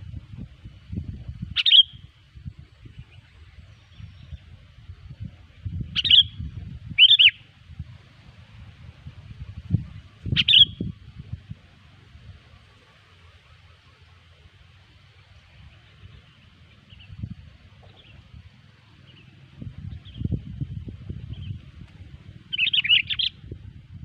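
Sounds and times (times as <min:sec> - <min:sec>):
bird chirping: 0:01.5 - 0:02.1, 0:06.0 - 0:07.5, 0:09.8 - 0:11.0, 0:22.4 - 0:23.5.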